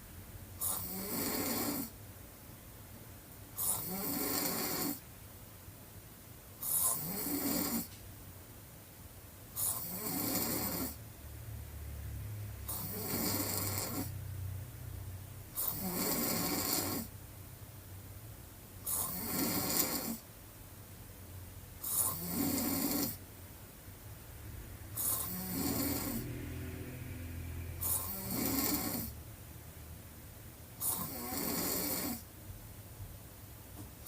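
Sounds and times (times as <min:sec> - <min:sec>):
woman snoring loudly: 0:00.6 - 0:01.9, 0:03.6 - 0:05.0, 0:06.6 - 0:07.9, 0:09.6 - 0:11.0, 0:12.6 - 0:14.1, 0:15.6 - 0:17.1, 0:18.9 - 0:20.2, 0:21.8 - 0:23.2, 0:25.0 - 0:26.4, 0:27.8 - 0:29.2, 0:30.8 - 0:32.2.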